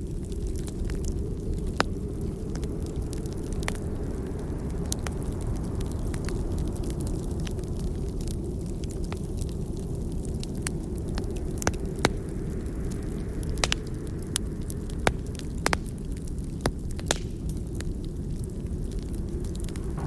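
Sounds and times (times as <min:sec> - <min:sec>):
burning log crackling: 0:00.0 - 0:20.0
low fire rumble: 0:00.0 - 0:20.0
sharp pops of fire: 0:10.6 - 0:17.9.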